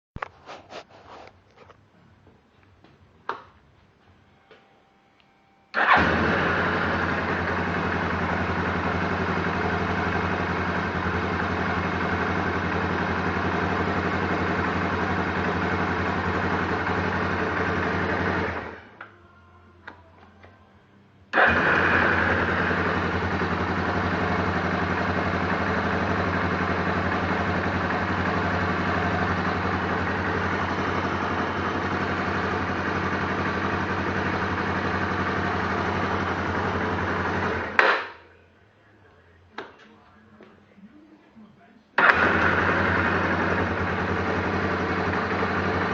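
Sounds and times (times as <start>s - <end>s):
atv engine idling: 5.8s - 18.8s, 21.3s - 37.9s, 42.0s - 45.9s.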